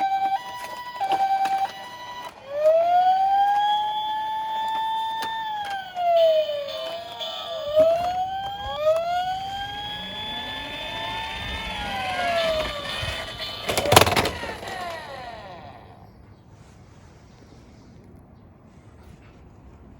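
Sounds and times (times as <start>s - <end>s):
toy cars clattering: 0.0s - 16.0s
toy sirens wailing: 0.0s - 16.0s.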